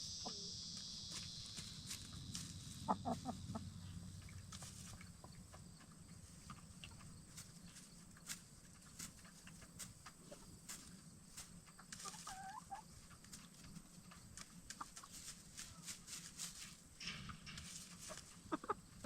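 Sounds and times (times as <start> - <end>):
soft hen call: 2.5 - 3.9, 12.0 - 12.8.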